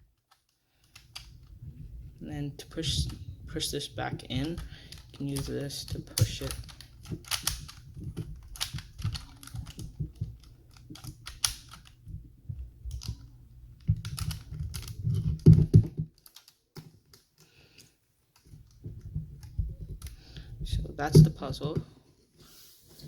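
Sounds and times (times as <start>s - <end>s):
plastic pieces clicking and clattering: 4.3s - 12.0s, 13.8s - 20.8s.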